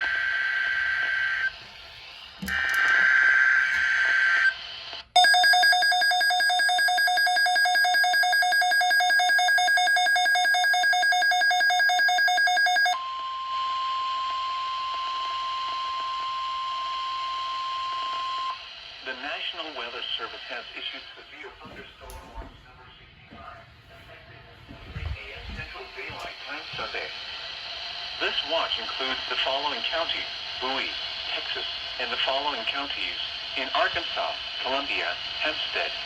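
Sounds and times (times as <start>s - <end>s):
rapidly pulsing electronic alarm: 5.2s - 18.7s
steady pure warning alarm tone: 5.2s - 20.6s.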